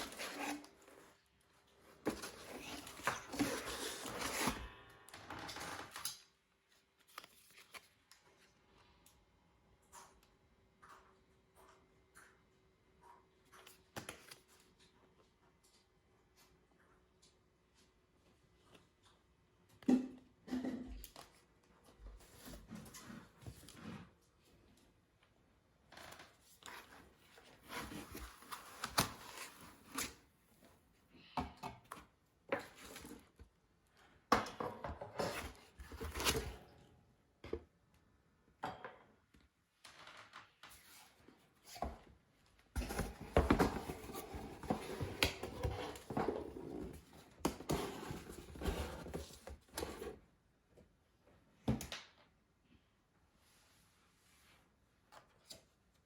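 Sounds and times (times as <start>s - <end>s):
packaging rustling and scraping: 0.0s - 6.1s, 26.6s - 30.2s, 42.8s - 50.2s.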